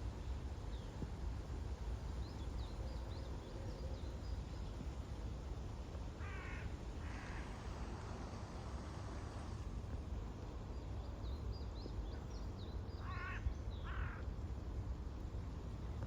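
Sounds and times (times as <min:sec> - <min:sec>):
crow cawing: 0:06.2 - 0:07.6, 0:13.0 - 0:14.2.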